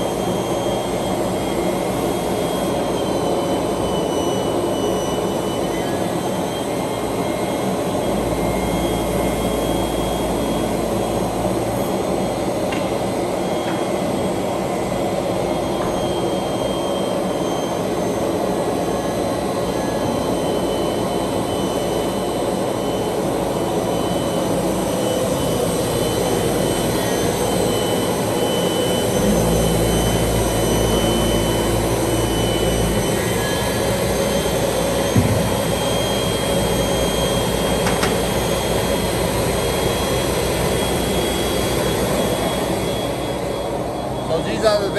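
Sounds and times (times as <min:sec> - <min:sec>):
deeper hum: 0:25.4 - 0:44.9.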